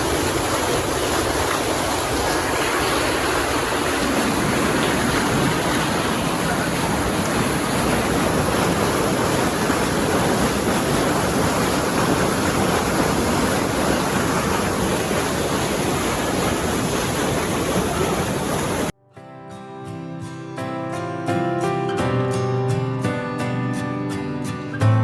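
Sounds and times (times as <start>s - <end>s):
water bubbling and gurgling: 0.0s - 18.9s
plucked guitar music: 19.0s - 25.0s.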